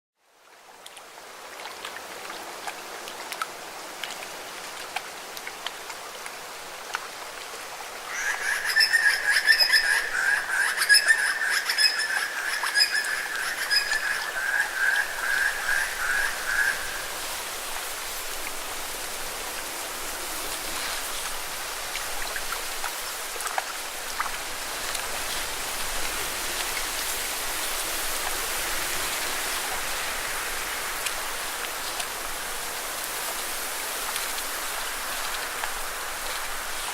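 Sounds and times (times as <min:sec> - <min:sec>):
steady rain: 0:00.2 - 0:36.9
frog trilling: 0:08.1 - 0:17.0.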